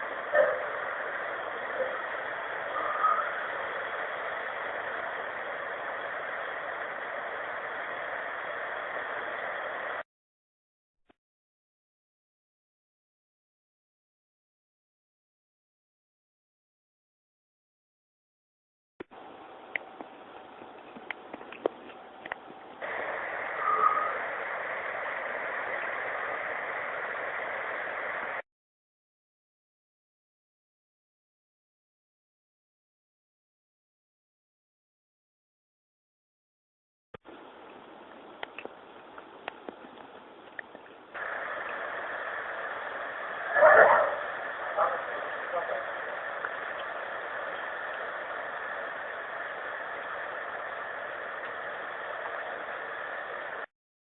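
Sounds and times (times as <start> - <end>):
hiss-like hum: 0.0 - 10.0, 19.0 - 28.4, 37.2 - 53.7
steady rushing noise: 0.0 - 10.0, 19.1 - 28.4, 37.3 - 53.7.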